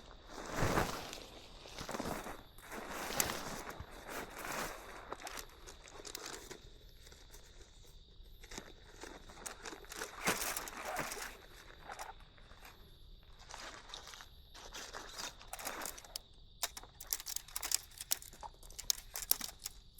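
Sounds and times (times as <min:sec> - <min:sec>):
camping gear rustling and crinkling: 0:00.0 - 0:19.9
footsteps crunching: 0:08.5 - 0:19.6.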